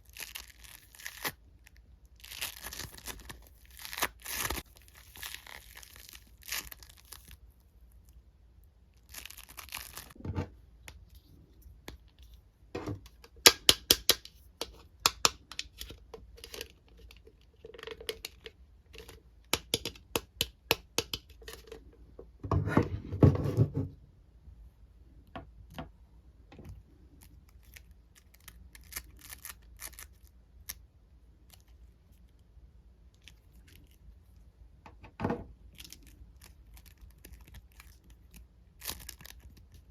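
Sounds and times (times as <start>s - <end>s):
rustling and crinkling: 0.0s - 8.2s, 8.9s - 13.4s, 33.1s - 39.9s
plastic toy parts clicking: 13.2s - 21.7s.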